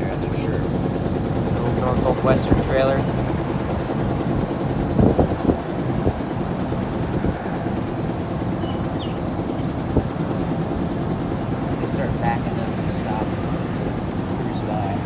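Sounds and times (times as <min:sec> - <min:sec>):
car interior low rumble: 0:00.0 - 0:15.0.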